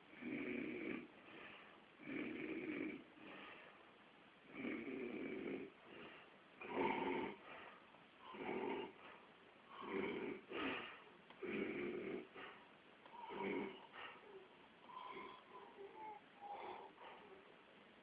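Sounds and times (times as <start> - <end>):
man snoring: 0.1 - 1.1, 2.0 - 3.1, 4.5 - 5.8, 6.6 - 7.4, 8.2 - 9.0, 9.7 - 10.8, 11.4 - 12.3, 13.1 - 17.4.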